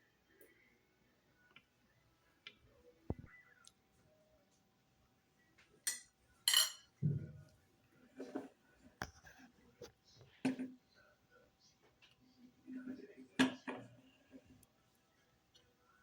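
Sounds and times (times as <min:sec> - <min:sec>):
cutlery clinking on a plate: 0:05.8 - 0:07.0
cutlery scraping: 0:05.9 - 0:07.0.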